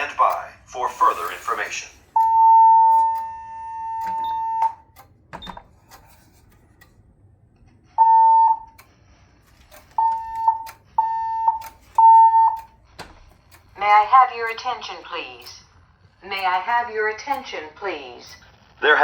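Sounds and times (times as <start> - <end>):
electronic alarm tone: 2.2 - 4.8, 8.0 - 8.7, 10.0 - 12.8
short beeps: 2.2 - 4.8, 10.0 - 12.7.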